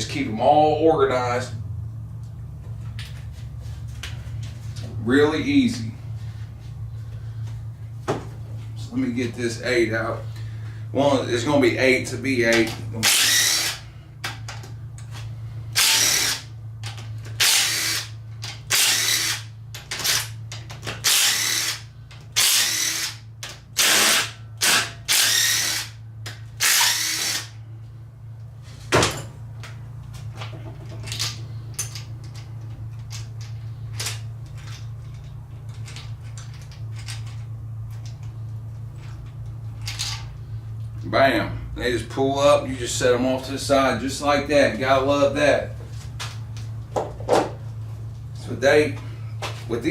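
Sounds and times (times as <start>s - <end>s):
steady low hum: 0.0s - 49.9s
cordless drill spinning bolts: 13.0s - 13.8s, 15.8s - 26.0s, 26.6s - 27.6s.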